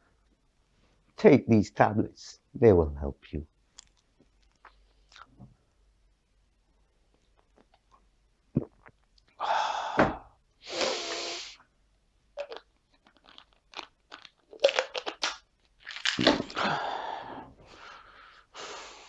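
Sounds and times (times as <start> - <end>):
tablets crunching and crinkling: 12.4 - 16.7.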